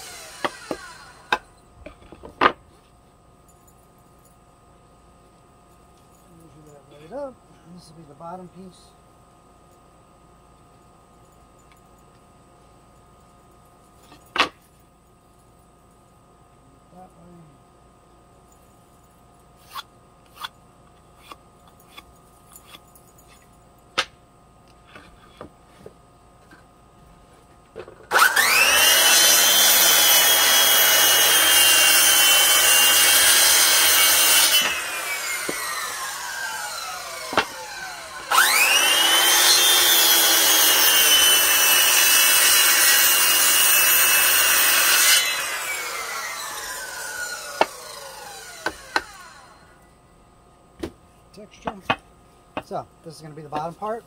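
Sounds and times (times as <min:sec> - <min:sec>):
power tool whine: 0:00.0 - 0:01.5, 0:28.1 - 0:49.9.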